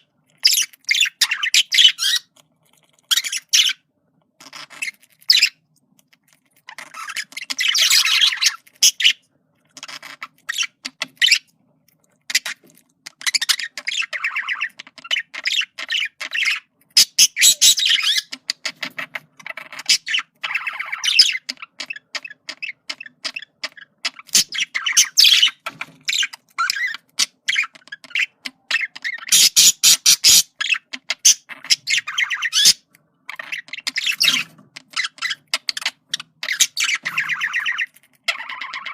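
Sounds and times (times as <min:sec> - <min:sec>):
budgerigar chattering: 0:12.4 - 0:38.9.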